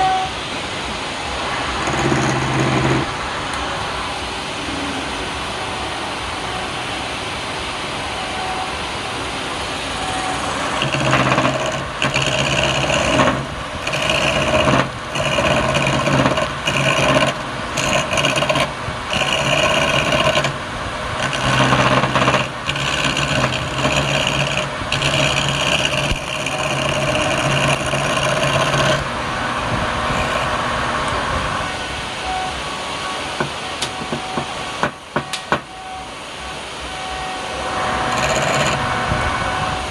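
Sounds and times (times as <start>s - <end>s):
wood lathe humming: 1.4s - 3.3s, 9.8s - 32.4s, 37.4s - 39.9s
tool cutting spinning wood: 1.5s - 3.2s, 10.0s - 31.0s, 37.6s - 39.3s.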